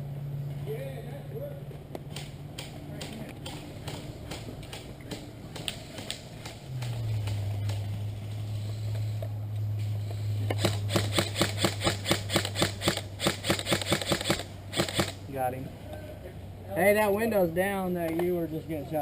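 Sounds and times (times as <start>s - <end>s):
steady low hum: 0.0s - 19.0s
airsoft gun shots: 10.6s - 15.2s.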